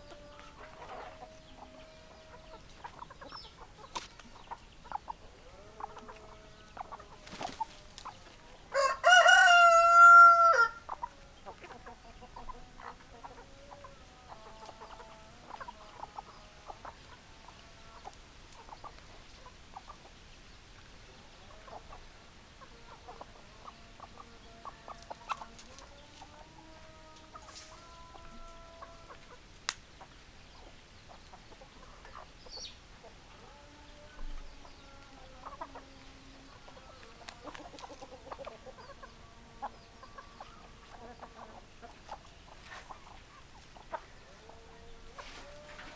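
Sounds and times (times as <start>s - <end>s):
hens clucking softly: 0.0s - 20.2s, 20.8s - 45.9s
rooster crowing: 8.7s - 11.0s.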